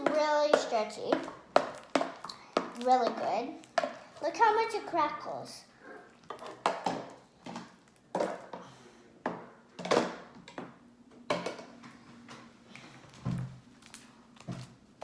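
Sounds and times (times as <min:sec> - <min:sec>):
plastic containers clacking: 0:06.2 - 0:08.6.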